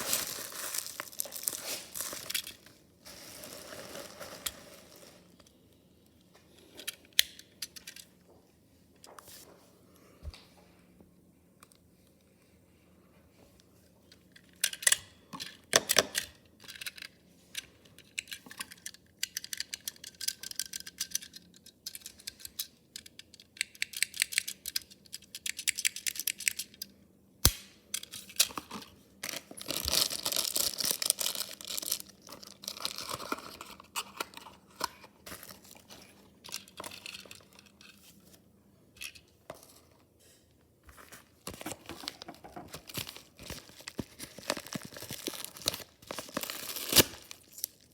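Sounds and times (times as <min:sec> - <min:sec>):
packaging rustling and crinkling: 0:00.0 - 0:05.5, 0:28.5 - 0:38.3, 0:40.9 - 0:47.9
packaging clicking: 0:41.5 - 0:47.8.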